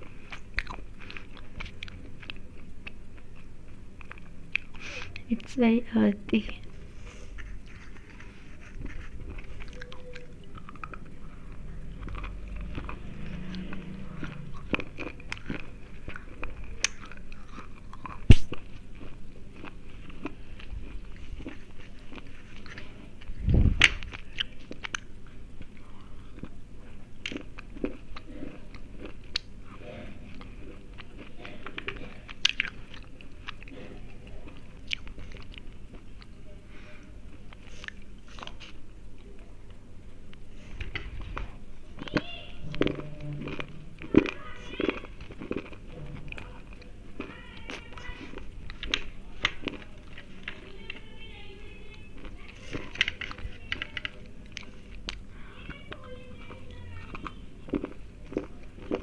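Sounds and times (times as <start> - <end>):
pencils crunching in mouth: 7.3 - 25.1, 42.0 - 50.8, 57.1 - 59.0.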